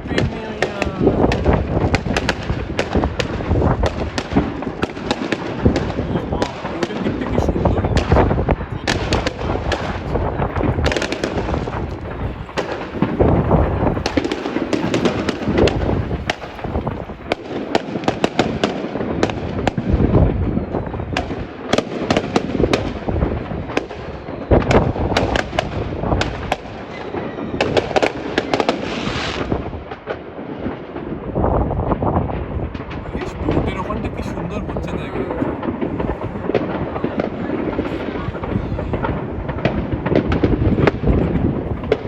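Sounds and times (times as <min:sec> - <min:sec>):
distant explosions rumble: 0:00.0 - 0:42.0
fireworks bangs and crackles: 0:00.0 - 0:42.0.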